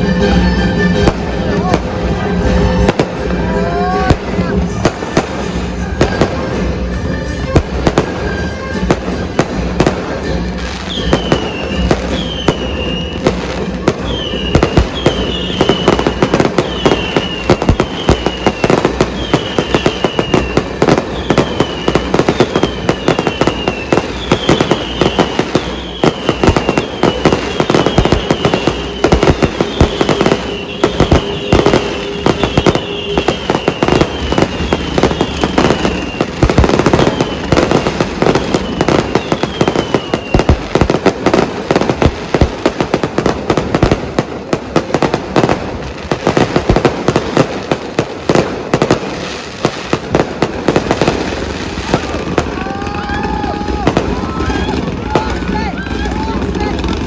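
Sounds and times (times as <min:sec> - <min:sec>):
fireworks bangs and crackling: 0:00.0 - 0:57.0
high falling whistles: 0:10.9 - 0:13.3, 0:14.0 - 0:40.6.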